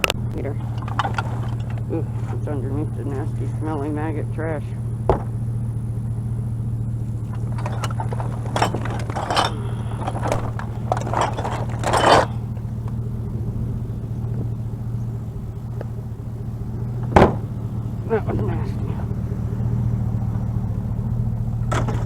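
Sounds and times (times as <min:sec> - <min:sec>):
vehicle engine idling: 0:00.0 - 0:22.0
rustling and scraping trash: 0:00.1 - 0:03.6, 0:07.2 - 0:13.0, 0:21.6 - 0:22.0.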